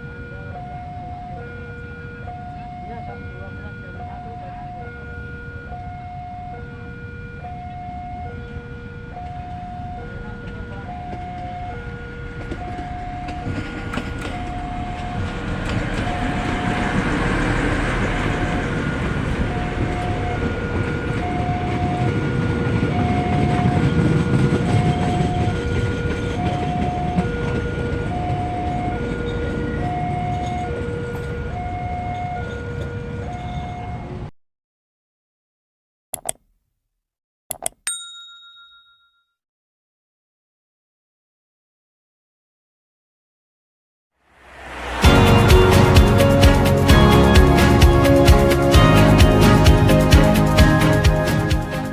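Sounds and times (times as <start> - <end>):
level crossing alarm beeping: 0.0 - 34.0
train rumbling past: 10.3 - 34.3, 44.2 - 51.9.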